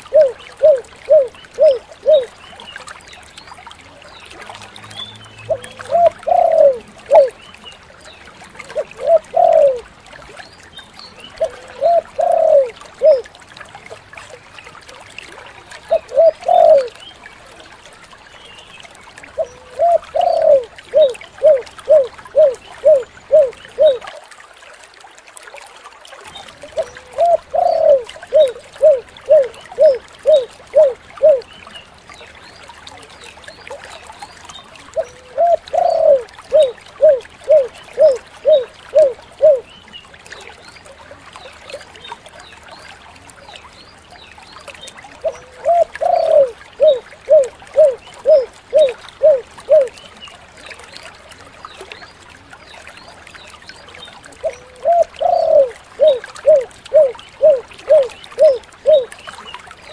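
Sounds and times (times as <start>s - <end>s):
dove cooing: 0.1s - 2.4s, 5.5s - 7.4s, 8.8s - 9.9s, 11.4s - 13.2s, 15.9s - 17.0s, 19.4s - 24.1s, 26.8s - 31.5s, 35.0s - 39.7s, 45.2s - 49.9s, 54.4s - 59.1s.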